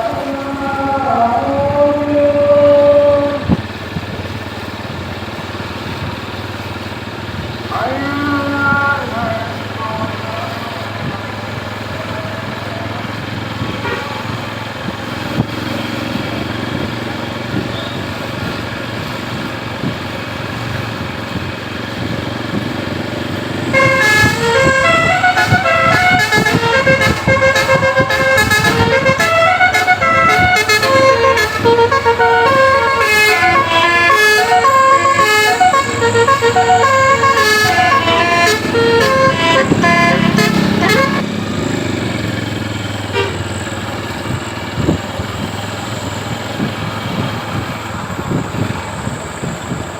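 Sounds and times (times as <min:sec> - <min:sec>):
bus engine rumble: 0:00.0 - 0:49.9
bus air horn playing a tune: 0:13.7 - 0:14.4, 0:23.6 - 0:43.6.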